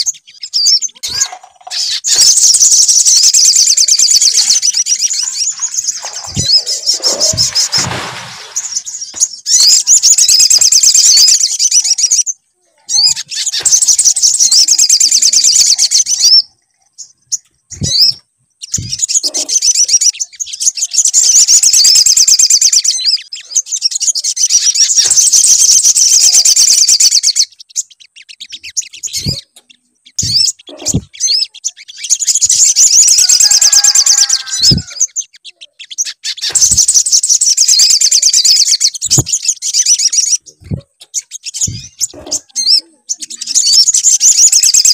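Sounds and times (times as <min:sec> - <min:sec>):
high-pitched chattering bird trills: 0:00.0 - 0:44.9
low thumps: 0:05.6 - 0:09.4, 0:40.6 - 0:40.9.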